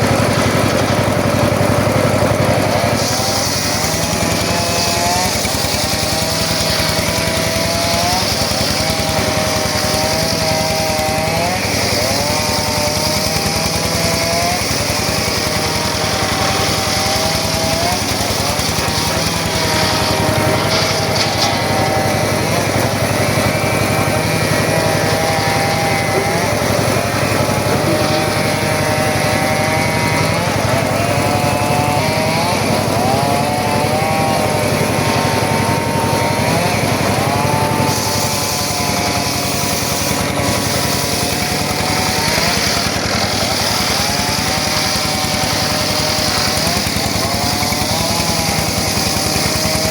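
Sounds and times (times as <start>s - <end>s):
circular saw cutting wood: 0.0s - 49.9s.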